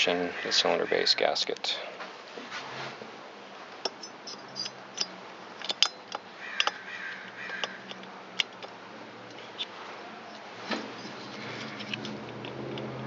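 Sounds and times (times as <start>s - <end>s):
light metal clicks and taps: 3.8s - 9.7s, 10.3s - 13.0s.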